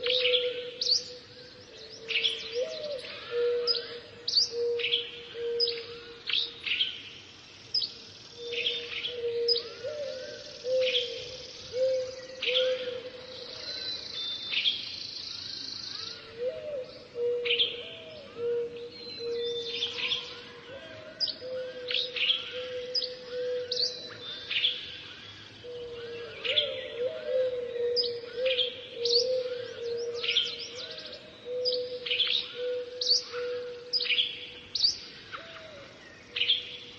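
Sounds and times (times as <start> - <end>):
low repeated bird call: 0.0 - 36.9
birds chirping and whistling: 18.4 - 20.5, 21.2 - 25.0, 25.6 - 36.9.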